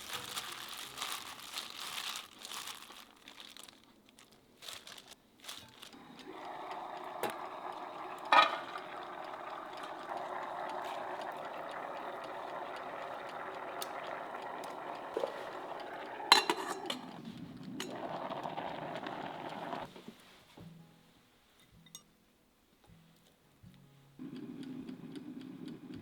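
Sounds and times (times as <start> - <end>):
running water rushing: 6.0 - 17.2.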